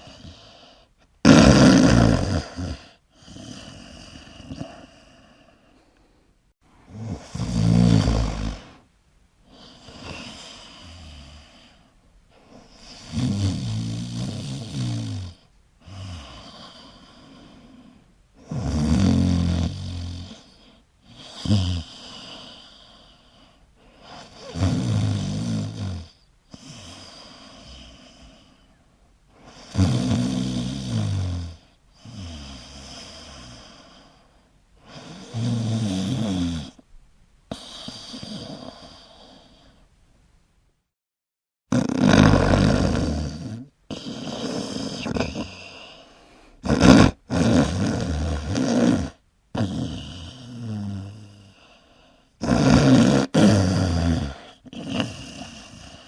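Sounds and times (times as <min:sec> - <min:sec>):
person snoring: 0:00.0 - 0:05.7, 0:06.9 - 0:08.8, 0:09.5 - 0:28.7, 0:29.4 - 0:36.8, 0:37.5 - 0:39.8, 0:41.7 - 0:56.0
soft breathing: 0:02.9 - 0:06.5, 0:37.5 - 0:39.9, 0:44.2 - 0:46.6, 0:51.4 - 0:52.4.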